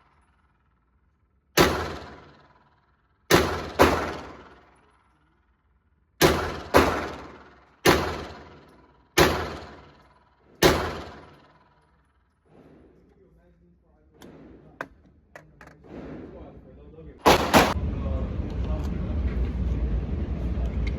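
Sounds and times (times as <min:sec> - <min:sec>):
pistol shots: 0:01.6 - 0:04.8, 0:06.2 - 0:10.0, 0:10.6 - 0:11.7, 0:17.2 - 0:17.8.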